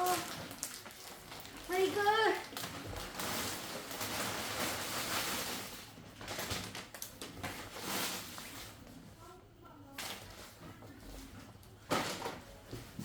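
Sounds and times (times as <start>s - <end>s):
packing rustling: 0.0s - 8.9s.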